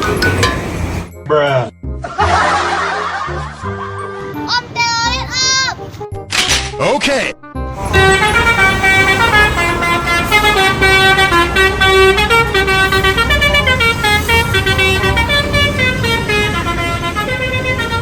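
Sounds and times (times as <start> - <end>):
low rumble of bus: 0.0 - 1.1, 1.9 - 6.2, 7.6 - 18.0
musical bus horn playing a tune: 7.6 - 18.0.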